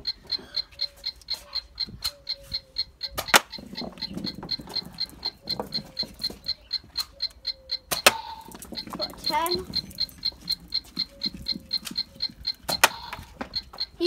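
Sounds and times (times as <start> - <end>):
timer beeps: 0.0 - 14.0.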